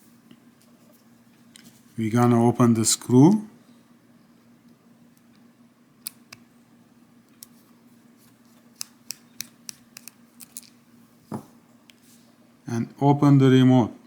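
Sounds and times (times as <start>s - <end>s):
screwdriver clicking on plastic: 8.8s - 10.7s.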